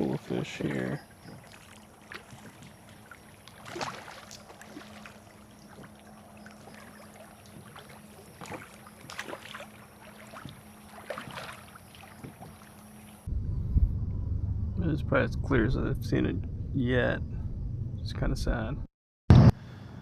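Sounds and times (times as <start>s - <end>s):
water splashing and lapping: 0.0s - 13.3s
faint steady hum: 0.0s - 18.0s.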